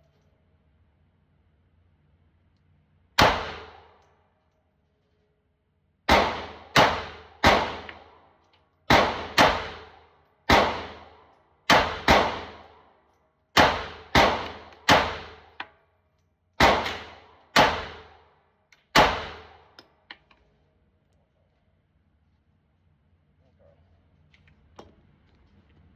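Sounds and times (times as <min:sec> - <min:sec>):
pistol shots echoing: 0:03.2 - 0:03.9, 0:06.1 - 0:08.1, 0:08.9 - 0:12.7, 0:13.6 - 0:15.5, 0:16.6 - 0:18.2, 0:18.9 - 0:19.6.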